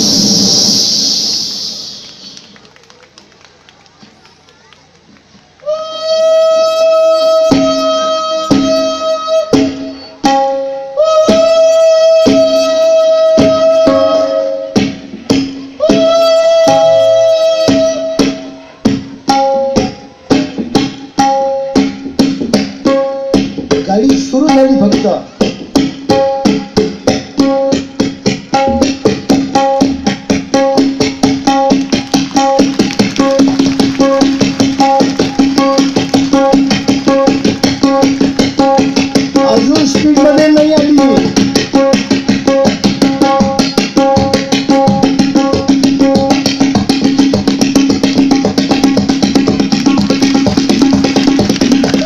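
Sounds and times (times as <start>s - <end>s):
tabla strokes: 25.8s - 40.3s
ringing pitched tabla stroke: 28.5s - 30.0s.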